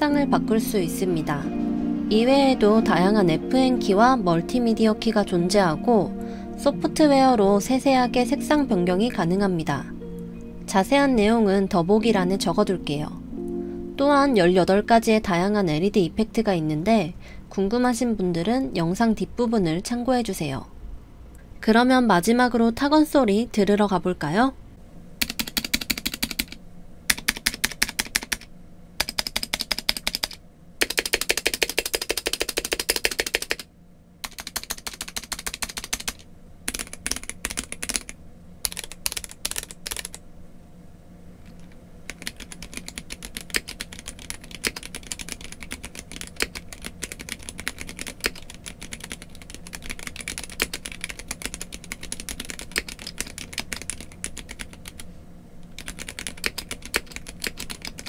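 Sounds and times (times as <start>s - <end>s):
mechanical keyboard typing: 25.2s - 40.2s, 41.5s - 55.0s, 55.7s - 58.0s.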